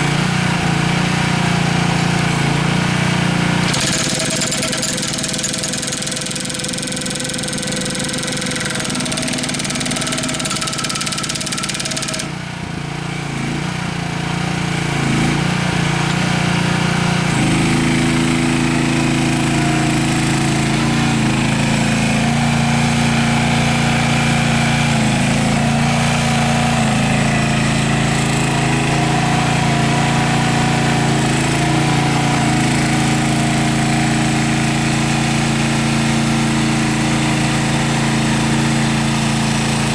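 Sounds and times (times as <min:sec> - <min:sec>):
machine engine running under load: 0:03.2 - 0:12.8
jackhammer hammering concrete: 0:03.5 - 0:12.6.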